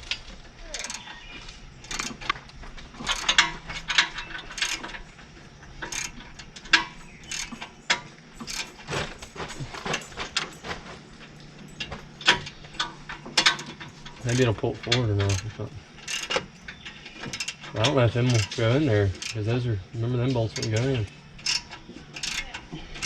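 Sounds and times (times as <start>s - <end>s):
socket ratchet clicking: 0.8s - 1.2s, 1.8s - 8.8s, 11.7s - 19.4s, 20.5s - 23.0s.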